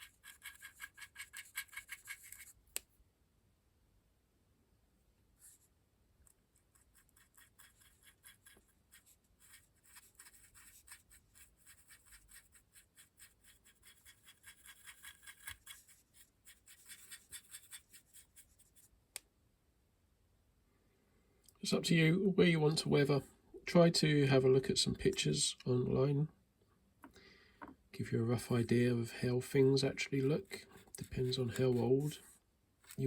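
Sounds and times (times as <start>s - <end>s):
stiff brush scratching: 6.6s - 18.9s, 30.2s - 33.0s.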